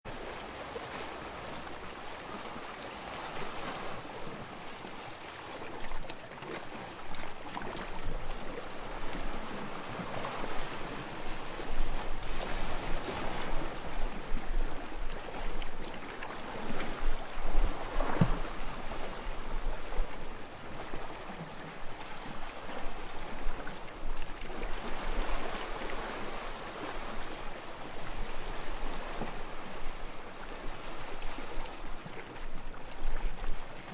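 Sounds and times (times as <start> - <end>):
sea waves splashing: 0.1 - 33.9.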